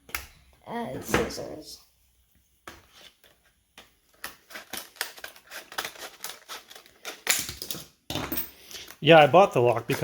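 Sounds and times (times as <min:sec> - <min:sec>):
scissors cutting plastic: 0:04.1 - 0:07.6.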